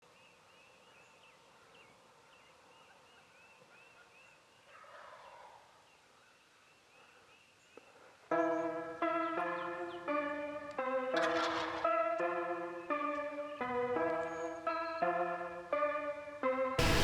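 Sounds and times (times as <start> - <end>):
faint bird chirping: 0.0 - 10.4
turkey gobbling: 4.7 - 5.7
loud guitar music: 16.8 - 17.0.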